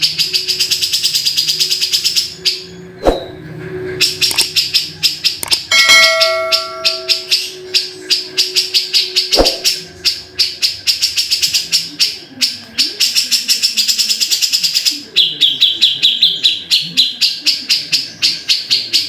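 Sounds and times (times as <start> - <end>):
bird chattering call: 0.0 - 19.0.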